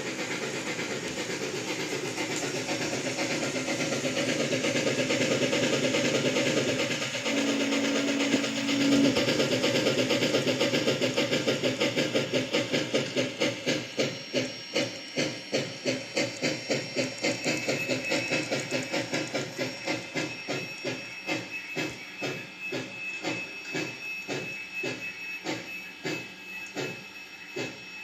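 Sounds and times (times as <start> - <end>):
rhythmic mechanical chugging with hiss: 0.0 - 28.0.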